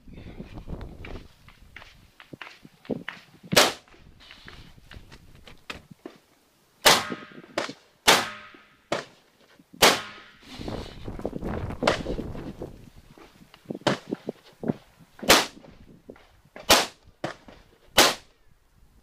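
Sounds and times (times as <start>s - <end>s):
loud rifle shots: 6.8s - 7.4s, 8.1s - 8.6s, 9.8s - 10.4s, 16.7s - 17.0s, 18.0s - 18.3s.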